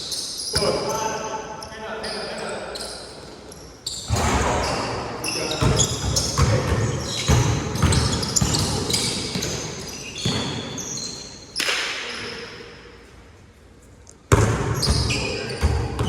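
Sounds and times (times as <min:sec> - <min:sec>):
basketball bouncing on hard court: 0:05.6 - 0:10.6, 0:14.3 - 0:16.0.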